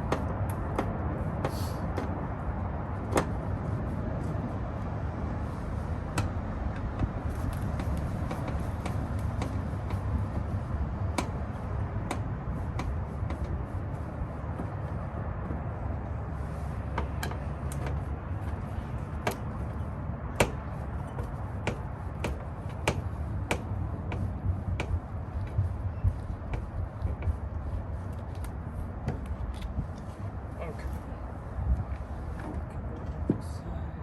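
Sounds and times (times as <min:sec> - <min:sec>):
hand tools clicking and tapping: 0:00.0 - 0:02.2, 0:06.1 - 0:13.6, 0:16.9 - 0:27.5
steady low rumble: 0:00.0 - 0:34.0.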